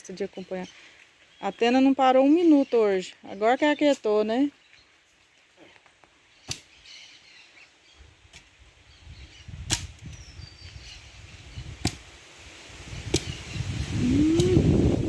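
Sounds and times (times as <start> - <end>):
wind buffeting microphone: 8.0 - 15.0.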